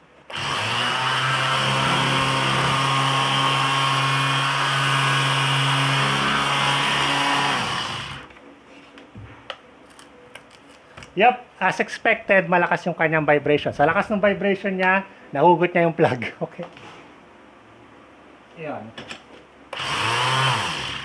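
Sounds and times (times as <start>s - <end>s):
orbital sander running: 0.3s - 8.3s, 19.8s - 21.0s.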